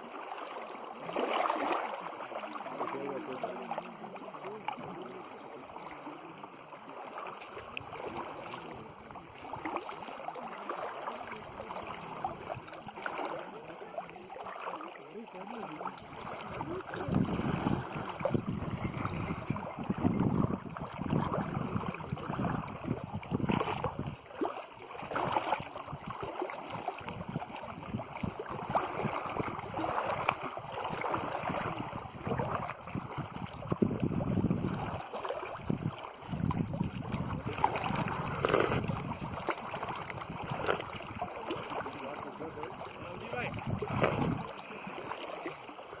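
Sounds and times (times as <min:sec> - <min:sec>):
lake water lapping: 0:00.0 - 0:46.0
wind on microphone: 0:16.2 - 0:24.2, 0:27.0 - 0:41.3, 0:42.5 - 0:44.6.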